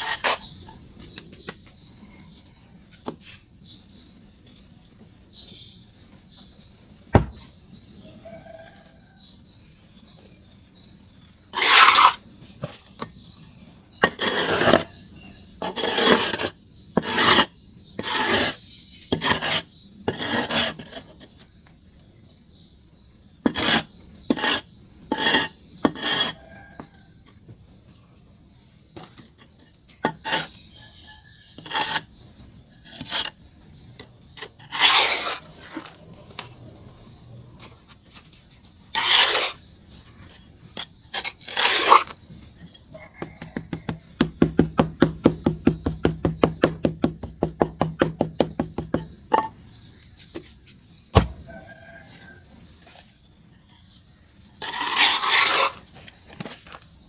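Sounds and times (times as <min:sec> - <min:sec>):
charcoal scraping strokes: 0:00.0 - 0:00.8, 0:11.5 - 0:12.2, 0:14.0 - 0:15.0, 0:15.6 - 0:18.6, 0:19.2 - 0:21.4, 0:31.6 - 0:32.2, 0:34.3 - 0:36.5, 0:37.6 - 0:56.8.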